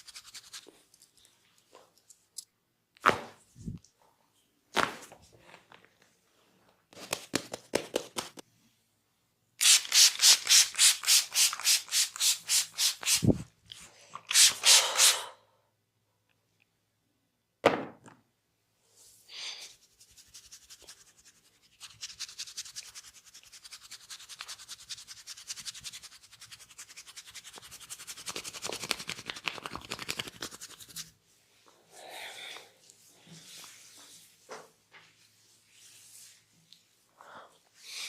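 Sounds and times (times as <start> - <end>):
hands rubbing skin: 0.0 - 1.2, 7.0 - 8.4, 19.7 - 31.2
fingers scratching scalp: 19.8 - 31.1.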